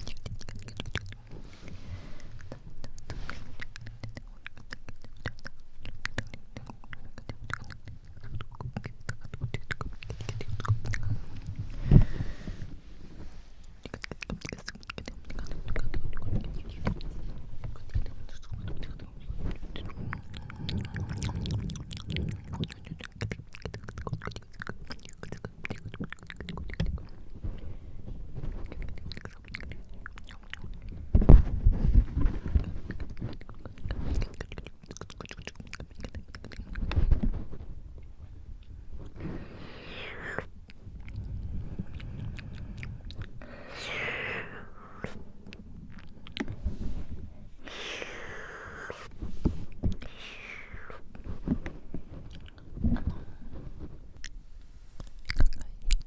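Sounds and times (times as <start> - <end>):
breathy whispering: 0.0 - 56.0
wet mouth clicks and smacks: 2.3 - 11.6, 13.6 - 27.2, 39.9 - 46.6, 55.0 - 56.0
breath blowing on microphone: 10.1 - 13.7, 38.9 - 45.5, 46.4 - 55.0.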